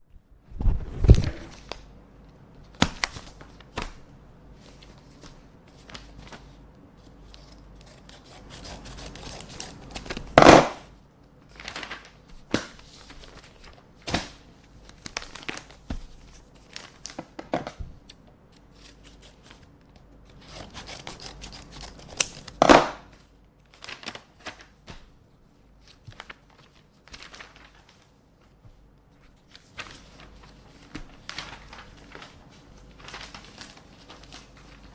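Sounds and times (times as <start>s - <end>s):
paper rustling and sliding: 0.5s - 1.9s, 29.2s - 34.9s
scissors snipping paper: 7.3s - 10.7s, 20.4s - 23.0s.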